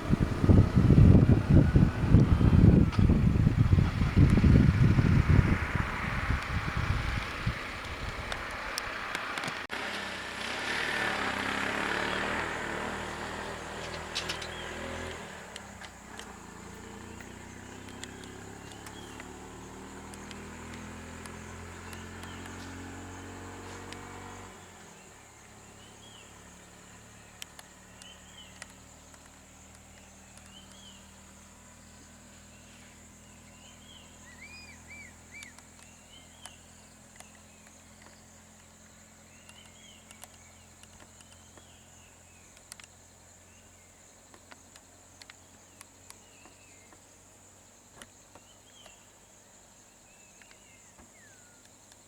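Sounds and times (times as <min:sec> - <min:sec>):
vehicle engine idling: 0:00.0 - 0:46.9.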